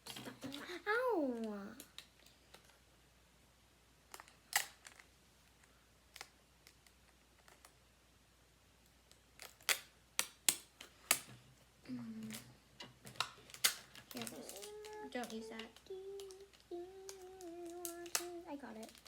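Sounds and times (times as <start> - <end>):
packaging tape and cardboard crackling: 9.1 - 11.3, 13.1 - 19.0.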